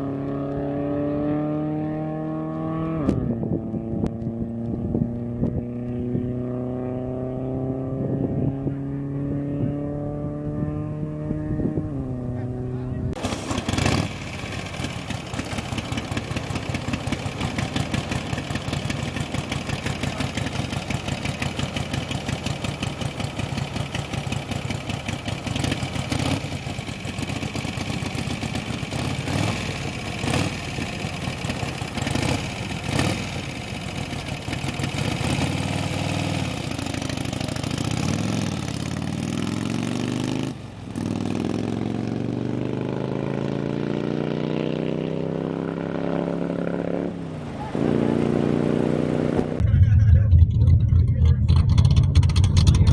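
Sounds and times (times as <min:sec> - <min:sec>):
race engine idling and revving: 0:00.0 - 0:52.9.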